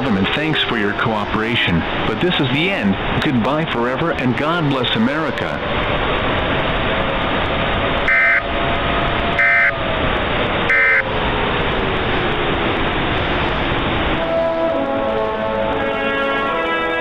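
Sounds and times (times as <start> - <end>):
broadcast static: 0.0 - 5.6
orchestral music: 14.1 - 17.0.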